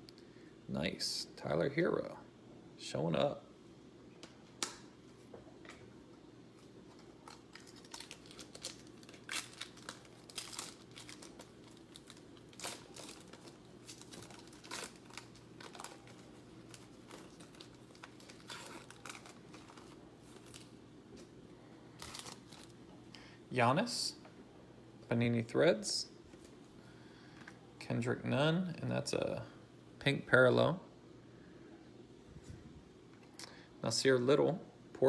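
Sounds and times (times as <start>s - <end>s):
faint steady hum: 0.0s - 35.0s
plastic wrapper crinkling and tearing: 6.6s - 21.3s, 21.9s - 22.8s.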